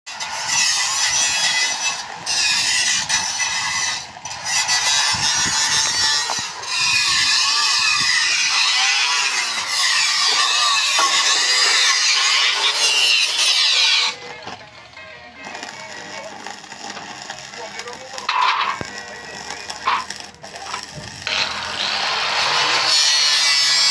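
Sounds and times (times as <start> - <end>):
power tool shrill squeal: 0.4 - 14.3.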